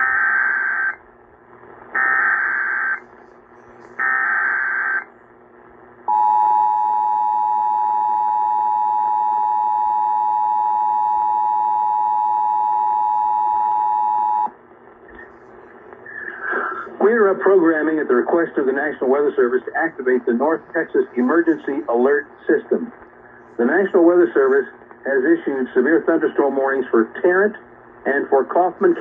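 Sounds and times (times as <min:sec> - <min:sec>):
two-tone attention signal: 0:06.1 - 0:14.5.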